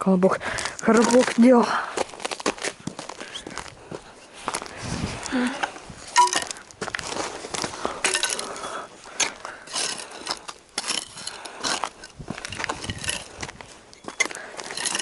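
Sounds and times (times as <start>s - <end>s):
small objects clinking and rattling: 0.9s - 1.4s, 6.1s - 6.7s, 8.0s - 8.8s, 9.7s - 15.0s.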